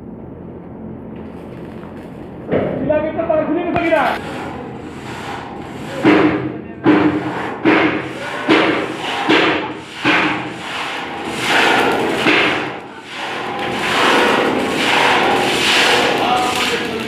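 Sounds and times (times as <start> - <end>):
hammer blows ringing: 3.8 - 17.0.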